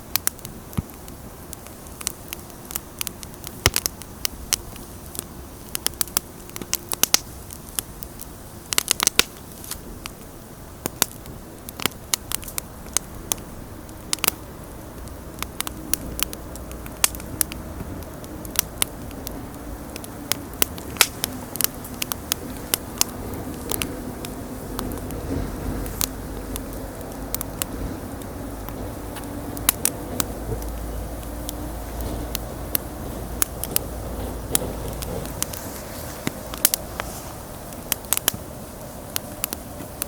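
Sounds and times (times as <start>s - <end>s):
bonfire crackling and popping: 0.0s - 40.0s
low steady rumble: 9.4s - 40.0s.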